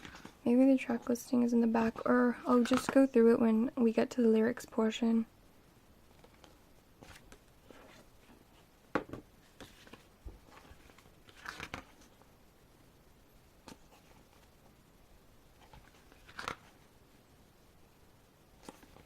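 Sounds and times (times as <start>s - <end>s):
photobook pages rustling: 0.0s - 0.4s, 1.7s - 3.0s, 6.1s - 12.3s, 13.6s - 14.7s, 15.5s - 16.9s, 18.6s - 19.0s.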